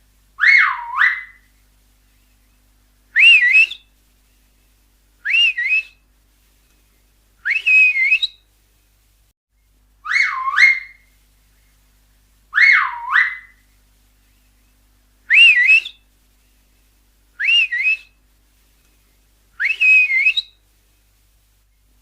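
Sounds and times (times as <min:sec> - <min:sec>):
finger whistling: 0:03.2 - 0:03.9, 0:05.3 - 0:06.0, 0:07.4 - 0:08.4, 0:17.4 - 0:18.1, 0:19.6 - 0:20.6.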